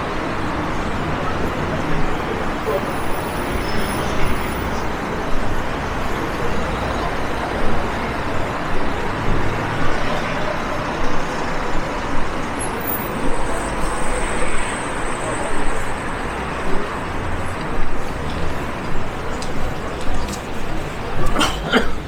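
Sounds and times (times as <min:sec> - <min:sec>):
road traffic: 0:00.0 - 0:22.0.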